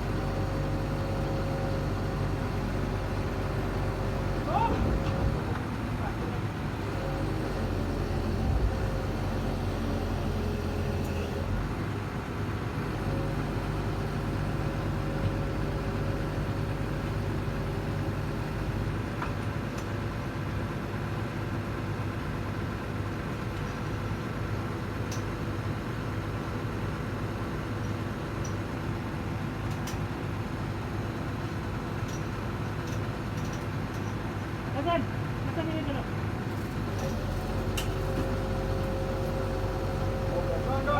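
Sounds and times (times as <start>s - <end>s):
engine running drone: 0.0s - 11.5s.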